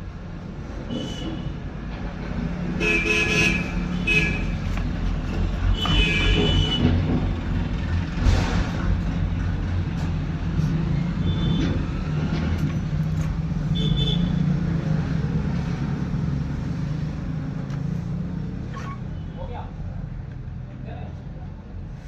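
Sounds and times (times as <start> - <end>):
road traffic rumble: 0.0 - 22.0
car horn beeps: 0.9 - 1.5, 2.8 - 4.6, 5.7 - 7.0, 11.2 - 11.8, 13.7 - 14.4.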